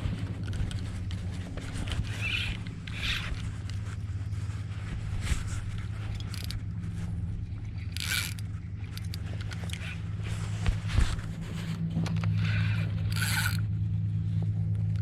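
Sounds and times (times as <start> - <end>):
scraping rustles: 0.0 - 14.8
low mechanical hum: 0.0 - 15.0.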